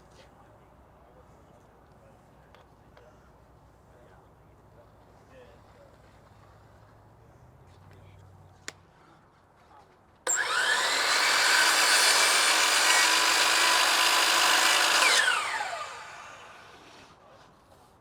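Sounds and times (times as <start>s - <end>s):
electric power saw cutting board: 10.3s - 17.1s.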